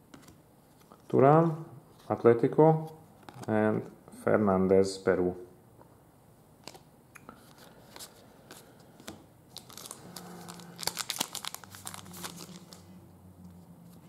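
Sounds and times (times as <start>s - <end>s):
plastic wrapper crinkling and tearing: 9.5s - 12.9s.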